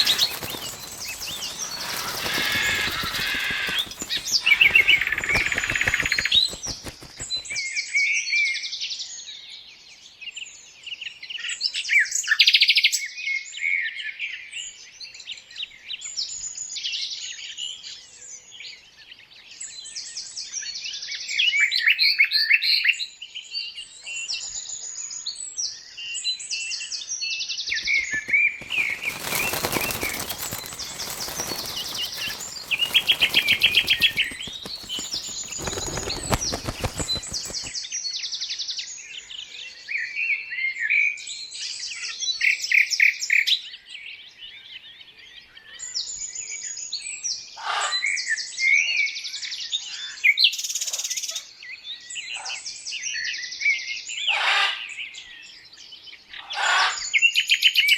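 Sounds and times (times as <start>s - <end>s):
rapid rasping rattle: 0.0s - 7.5s, 28.6s - 37.7s
birds chirping and trilling: 0.0s - 7.7s, 27.7s - 37.8s.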